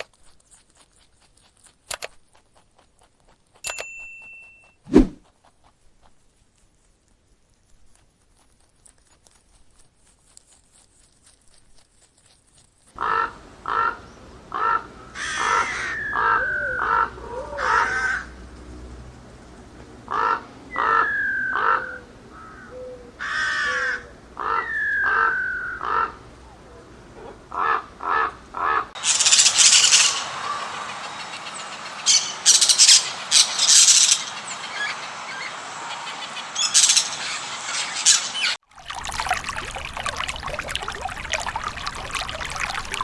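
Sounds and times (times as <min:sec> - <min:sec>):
bird cawing: 0:13.0 - 0:18.6, 0:20.1 - 0:35.5.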